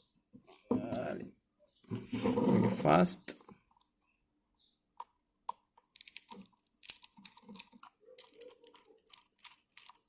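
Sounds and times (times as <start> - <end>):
plastic casing being handled: 5.8 - 10.0.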